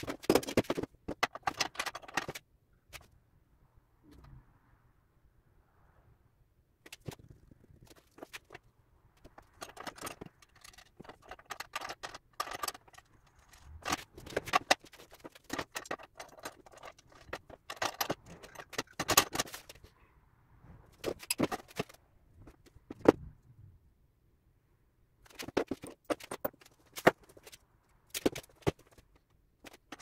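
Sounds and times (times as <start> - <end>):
metal parts clinking and rattling: 0.0 - 3.1, 9.2 - 19.9, 20.9 - 23.2, 25.2 - 30.0.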